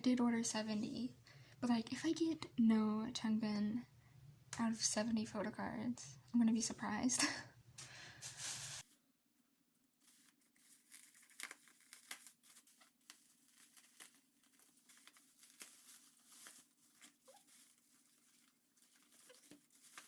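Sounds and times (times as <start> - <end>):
packaging crinkling and tearing: 10.0 - 20.0.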